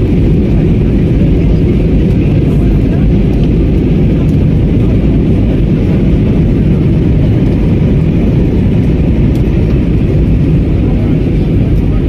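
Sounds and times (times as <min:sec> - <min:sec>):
jet engine and airflow rumble: 0:00.0 - 0:12.0.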